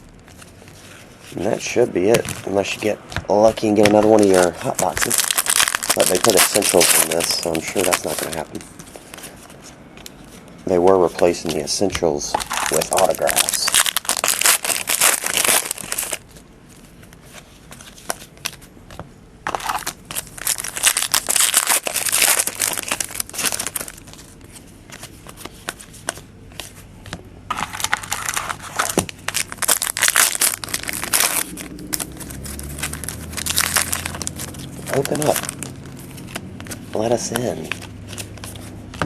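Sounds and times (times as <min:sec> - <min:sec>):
foil wrappers crinkling and tearing: 0:01.3 - 0:09.3, 0:12.2 - 0:16.4, 0:19.5 - 0:25.1, 0:27.5 - 0:39.0.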